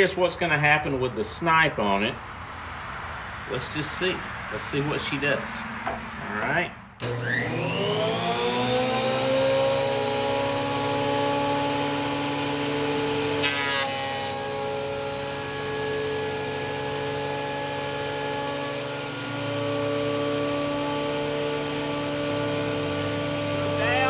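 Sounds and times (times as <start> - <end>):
thickness planer whining: 7.0 - 24.0.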